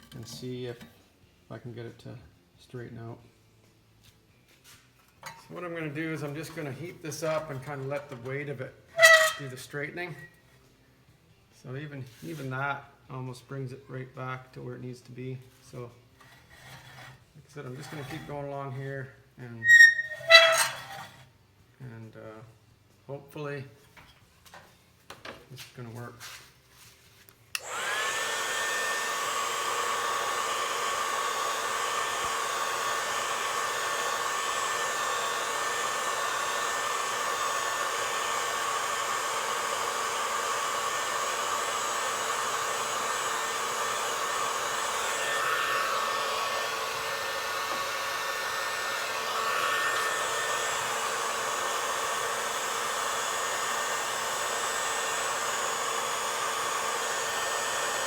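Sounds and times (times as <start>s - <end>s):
heat gun blowing and whining: 8.9s - 9.5s, 17.8s - 18.3s, 19.6s - 21.2s, 27.6s - 58.0s.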